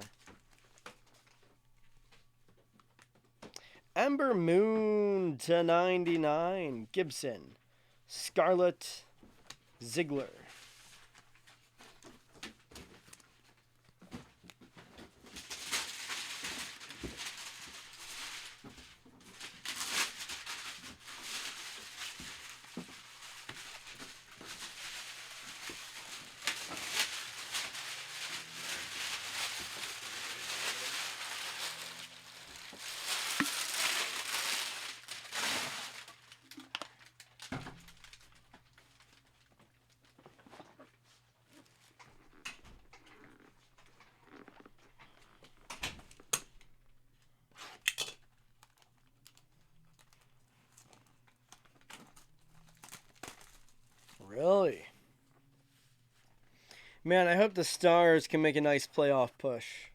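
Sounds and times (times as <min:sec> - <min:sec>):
plastic wrapping crinkling: 0:15.2 - 0:40.2, 0:48.5 - 0:54.3
trading cards rustling: 0:22.5 - 0:36.1.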